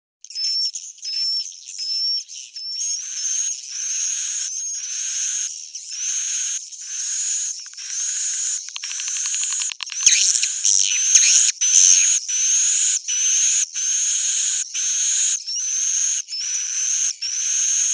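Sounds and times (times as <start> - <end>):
high twittering bird chirps: 0.2 - 17.9
fast rattle of clicks: 7.5 - 11.4.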